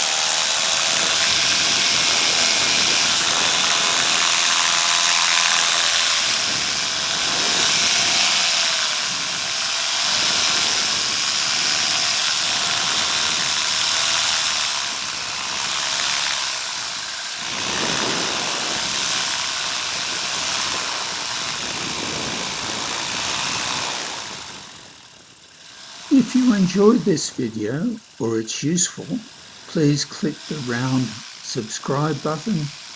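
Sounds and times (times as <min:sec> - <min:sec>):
paramotor engine and propeller: 0:00.0 - 0:32.9
wind rush on microphone: 0:17.4 - 0:24.8.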